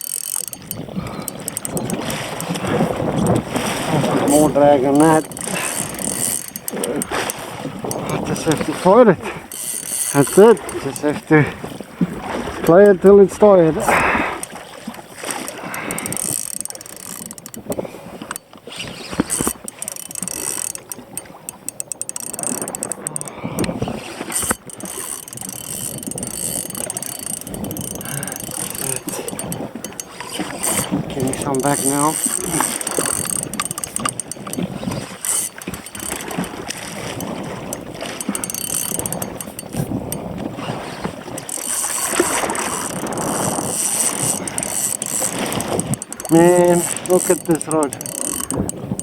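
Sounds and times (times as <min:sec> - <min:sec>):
fishing reel ratcheting: 0:00.0 - 0:11.6, 0:12.4 - 0:13.4, 0:14.3 - 0:49.0
water noise: 0:00.0 - 0:49.0.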